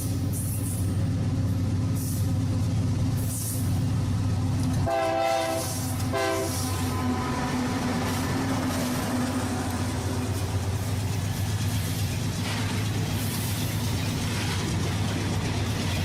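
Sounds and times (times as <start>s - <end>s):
locomotive rumbling on rails: 0.0s - 16.0s
hiss: 3.1s - 3.8s, 11.6s - 14.7s
train horn: 4.8s - 7.6s.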